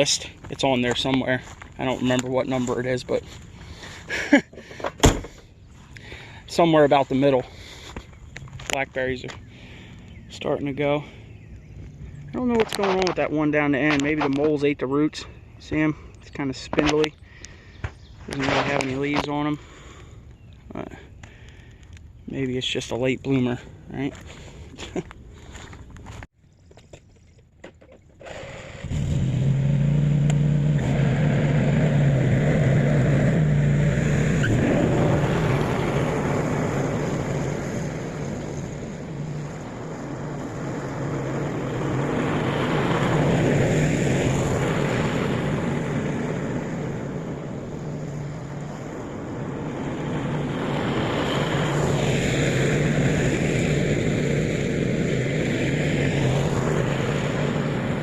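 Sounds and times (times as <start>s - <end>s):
riding lawn mower engine: 27.7s - 58.0s.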